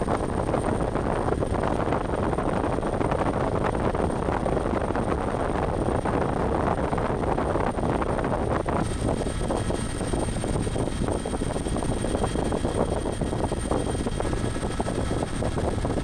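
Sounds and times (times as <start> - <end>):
helicopter engines and rotor: 0.0 - 16.0
faint high whine: 8.7 - 16.0.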